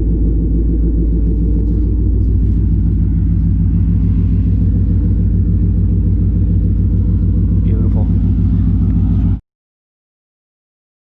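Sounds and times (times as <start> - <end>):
engine running with low hum: 0.0 - 9.4.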